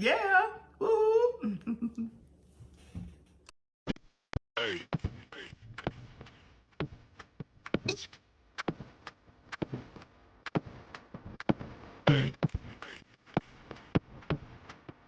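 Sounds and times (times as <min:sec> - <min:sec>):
person humming: 0:00.0 - 0:02.1.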